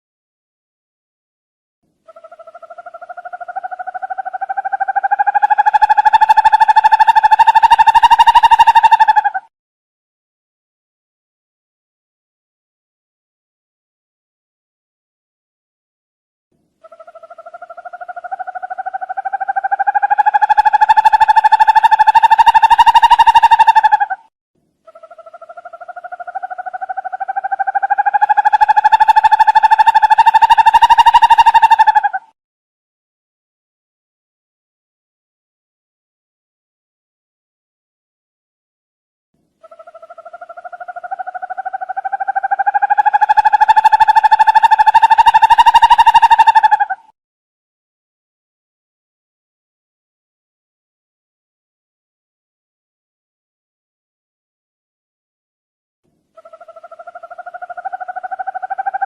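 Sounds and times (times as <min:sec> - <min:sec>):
owl trilling call: 0:02.1 - 0:09.5, 0:16.8 - 0:24.3, 0:24.9 - 0:32.3, 0:39.6 - 0:47.1, 0:56.4 - 0:59.0.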